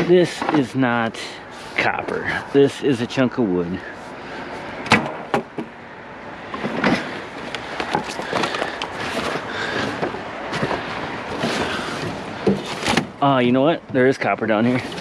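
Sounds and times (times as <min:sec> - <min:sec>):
rustling and scraping: 0:06.5 - 0:13.2, 0:14.7 - 0:15.0
junk clattering in a dumpster: 0:06.6 - 0:13.2.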